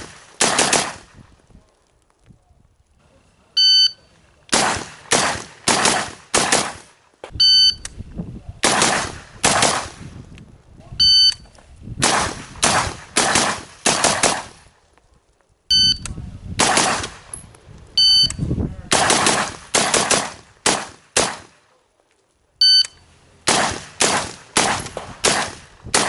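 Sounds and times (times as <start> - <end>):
rifle shots: 0.0 - 1.2, 4.5 - 7.0, 8.6 - 10.0, 12.0 - 14.6, 16.6 - 17.3, 18.9 - 21.6, 23.4 - 26.0
shot timer beep: 3.6 - 4.1, 7.4 - 8.0, 11.0 - 11.5, 15.7 - 16.1, 18.0 - 18.4, 22.6 - 23.0.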